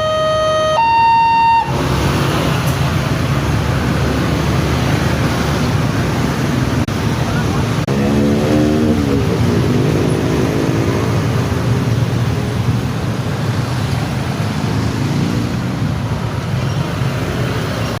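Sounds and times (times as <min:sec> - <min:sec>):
passing vehicles rumble: 0:00.0 - 0:18.0.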